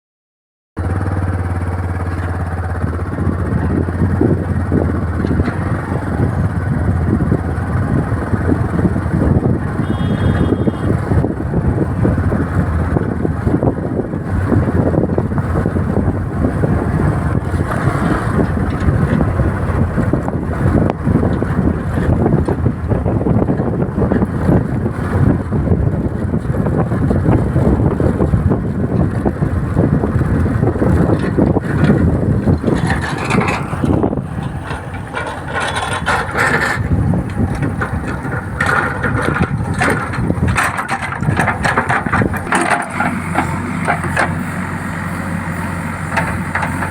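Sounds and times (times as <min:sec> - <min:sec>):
diesel engine running: 0:00.8 - 0:46.9.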